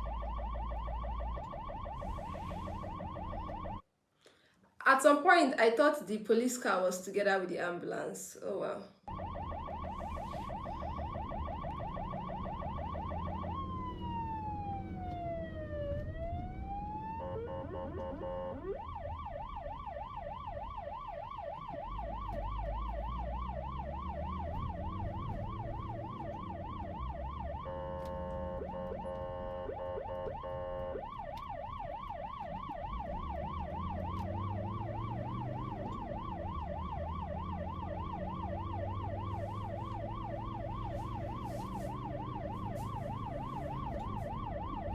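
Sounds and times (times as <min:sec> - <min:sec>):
low traffic rumble: 0:00.0 - 0:03.8, 0:09.1 - 0:44.9
siren slow wail: 0:00.0 - 0:03.9, 0:09.0 - 0:44.9
siren yelp: 0:00.0 - 0:03.9, 0:09.1 - 0:44.9
steady blaring horn: 0:16.2 - 0:19.0, 0:26.0 - 0:31.3, 0:32.8 - 0:44.9.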